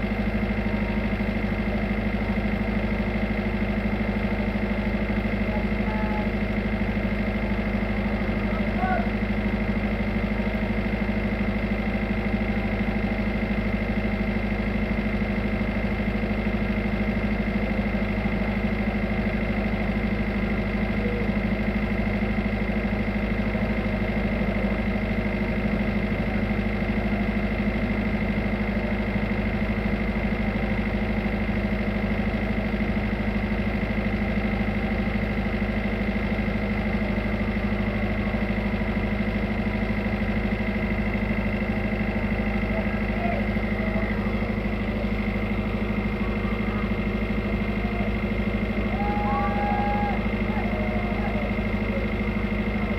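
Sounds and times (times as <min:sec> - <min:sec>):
diesel engine drone: 0:00.0 - 0:52.9
high whine: 0:41.6 - 0:52.9.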